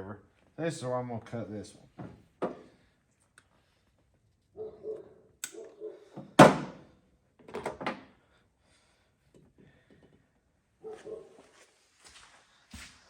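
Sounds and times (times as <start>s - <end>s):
cutters snapping through wire: 5.4s - 5.6s.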